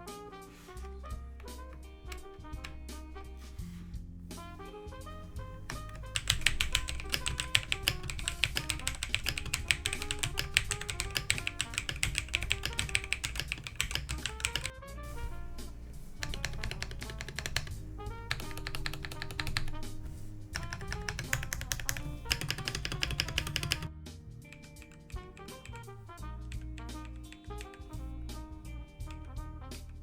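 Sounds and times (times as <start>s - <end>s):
background music with bass: 0.0s - 6.2s, 24.0s - 30.0s
mechanical keyboard typing: 1.4s - 3.0s, 4.5s - 23.9s, 24.5s - 25.9s, 26.5s - 28.0s.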